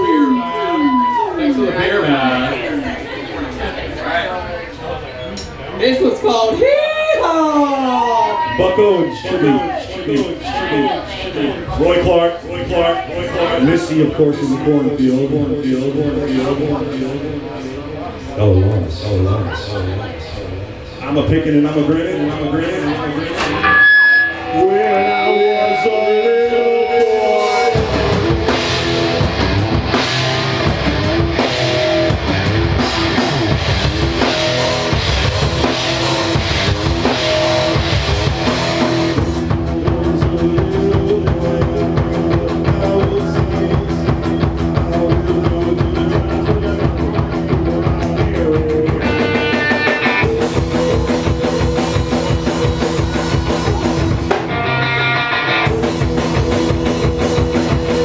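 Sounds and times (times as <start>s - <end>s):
electric guitar: 22.9s - 58.0s
drum kit: 23.4s - 58.0s.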